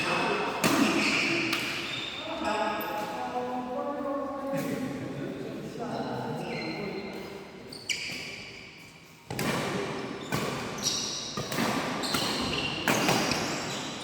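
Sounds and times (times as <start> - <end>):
court shoes squeaking: 0.0 - 3.1, 6.0 - 14.0
racket hitting shuttlecock: 0.6 - 1.9, 9.3 - 13.6.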